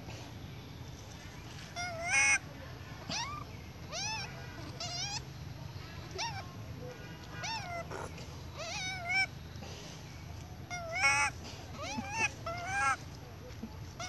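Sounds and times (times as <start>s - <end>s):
baby monkey crying: 1.7s - 2.4s, 3.1s - 5.3s, 6.1s - 6.5s, 7.4s - 9.3s, 10.6s - 13.0s.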